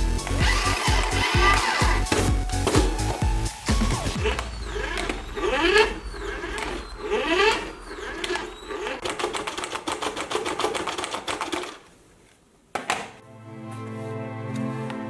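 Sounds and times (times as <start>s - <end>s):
toy car electric motor whining: 0.0s - 2.8s, 3.7s - 10.9s.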